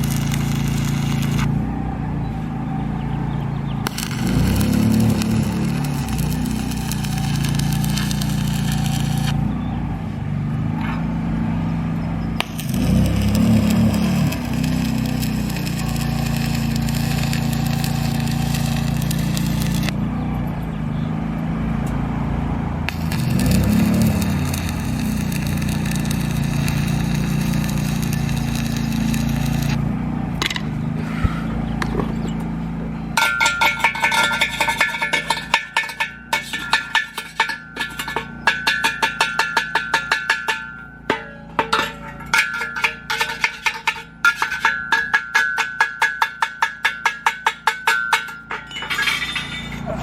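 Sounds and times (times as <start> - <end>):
low engine drone: 0.0 - 39.0.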